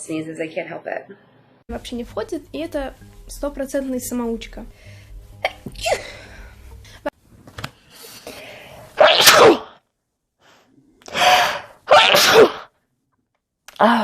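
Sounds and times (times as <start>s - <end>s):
indrawn breath: 4.7s - 5.2s, 6.0s - 7.1s, 7.9s - 9.0s, 10.4s - 11.8s
person sneezing: 5.4s - 6.2s, 9.0s - 9.8s, 11.1s - 12.7s.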